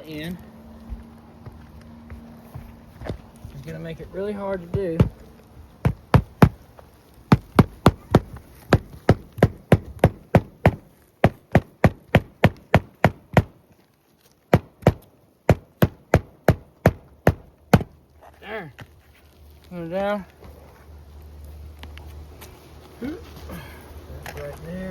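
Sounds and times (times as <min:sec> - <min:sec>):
hammer striking roofing nail: 0:04.6 - 0:05.2, 0:05.8 - 0:06.6, 0:07.3 - 0:13.6, 0:14.5 - 0:18.0.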